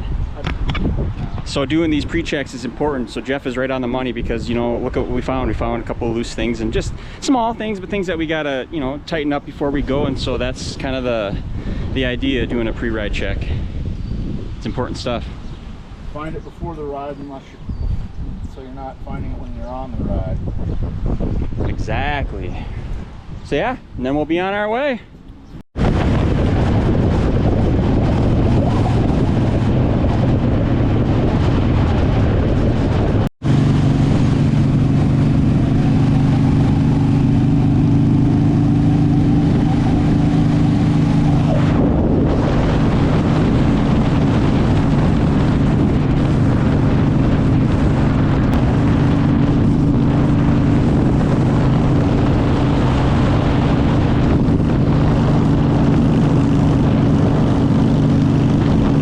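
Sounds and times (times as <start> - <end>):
wind noise on microphone: 0.0 - 59.0
motorcycle engine cruising: 25.2 - 59.0.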